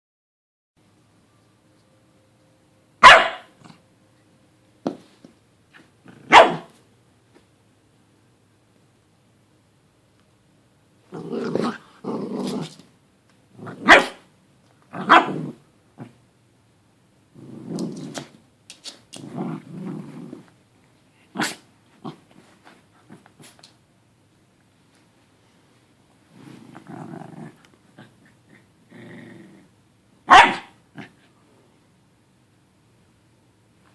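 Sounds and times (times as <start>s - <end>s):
dog barking: 3.0s - 3.6s, 6.3s - 6.7s, 13.8s - 14.2s, 15.0s - 15.4s, 30.3s - 30.8s
dog growling: 11.1s - 12.8s, 13.5s - 14.0s, 14.9s - 16.2s, 17.4s - 18.3s, 19.2s - 20.5s, 26.4s - 29.7s.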